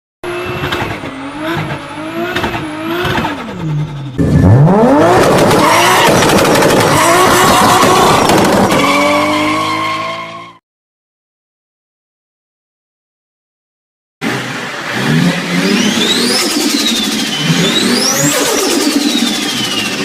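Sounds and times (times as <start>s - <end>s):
turbocharged car engine revving: 0.2s - 10.5s, 14.2s - 20.0s
engine crackling: 0.4s - 9.2s, 14.2s - 20.0s
turbo whistle: 15.7s - 20.0s.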